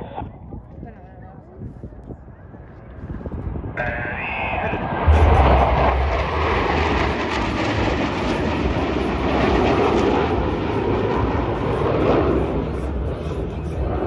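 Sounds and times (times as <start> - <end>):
jets roaring overhead: 3.5 - 14.0.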